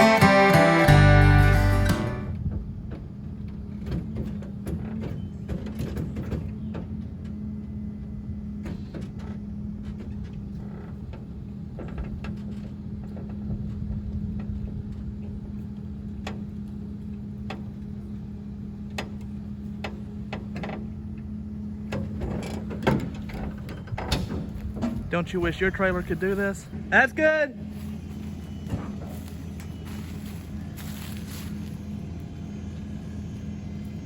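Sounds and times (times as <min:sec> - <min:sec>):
clanks and knocks: 0:21.8 - 0:25.1
motor humming: 0:27.6 - 0:34.0.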